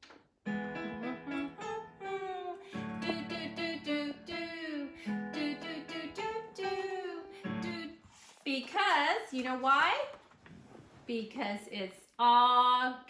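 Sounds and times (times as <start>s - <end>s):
gliding melody line: 0.5s - 7.9s.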